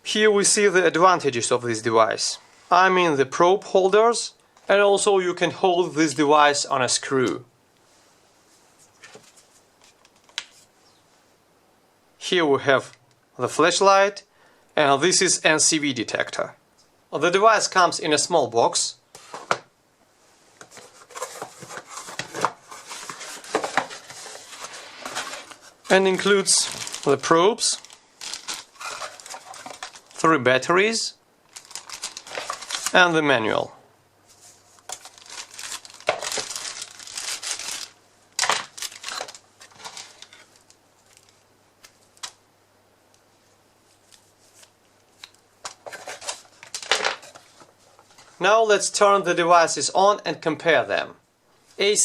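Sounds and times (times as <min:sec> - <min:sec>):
packaging crinkling and rustling: 0:20.6 - 0:30.2, 0:31.5 - 0:33.0, 0:34.3 - 0:42.4, 0:44.0 - 0:48.3.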